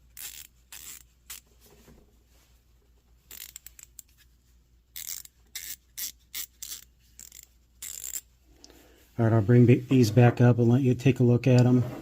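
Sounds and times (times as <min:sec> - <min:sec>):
ratchet rasping: 0:00.1 - 0:01.4, 0:03.3 - 0:04.1, 0:04.9 - 0:08.3
ratchet pawl clicking: 0:05.0 - 0:08.2.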